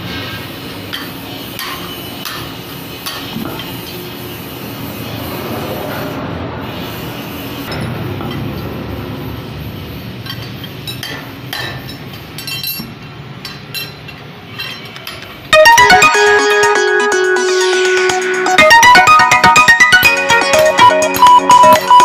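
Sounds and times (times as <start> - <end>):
low workshop rumble: 0.0 - 15.4.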